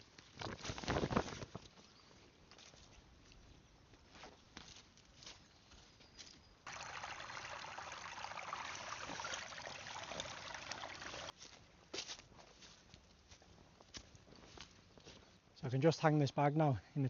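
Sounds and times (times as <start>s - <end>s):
stream water trickling and splashing: 6.6s - 11.4s.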